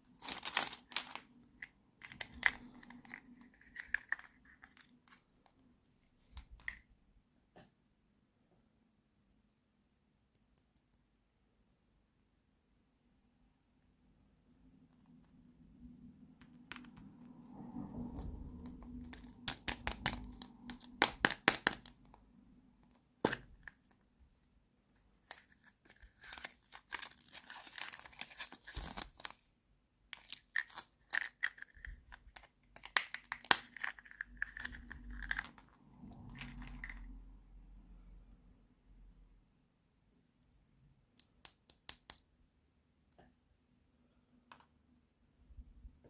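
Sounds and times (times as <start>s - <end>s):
plastic packaging crinkling and tearing: 0.0s - 1.4s, 25.2s - 29.5s, 30.2s - 35.6s.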